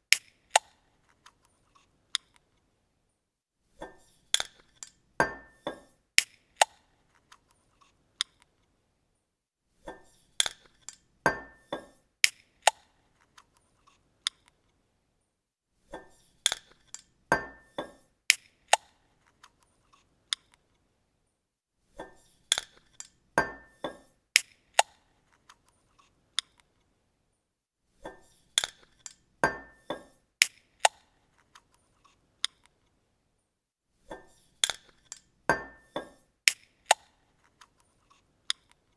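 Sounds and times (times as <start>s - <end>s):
bottle cap opening on glass bottle: 9.9s - 12.9s, 16.0s - 18.9s, 22.0s - 25.0s, 28.1s - 31.1s, 34.1s - 37.2s.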